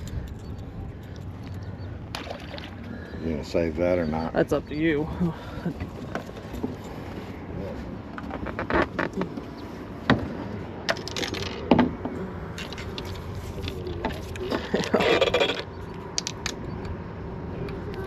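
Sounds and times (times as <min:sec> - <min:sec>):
gear scraping: 0:12.5 - 0:15.8.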